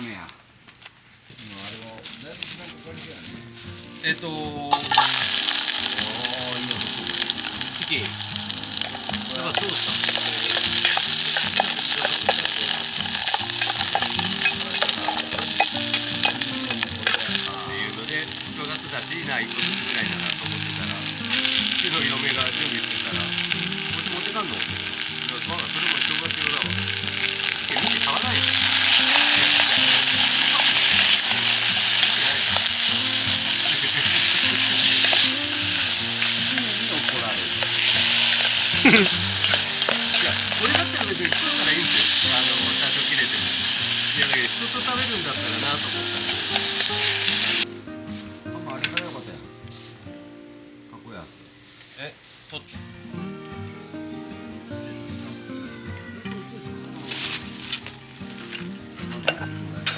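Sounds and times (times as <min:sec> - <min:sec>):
background music with held notes: 0:01.6 - 0:59.9
food sizzling in a pan: 0:03.2 - 0:47.7, 0:56.9 - 0:59.9
scraping ticks of stirring: 0:04.8 - 0:47.7.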